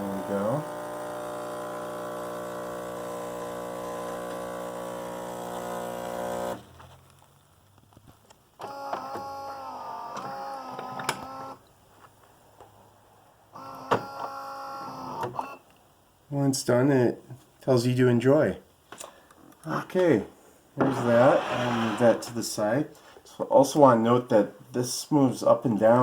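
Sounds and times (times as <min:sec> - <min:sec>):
espresso machine humming: 0:00.1 - 0:06.6.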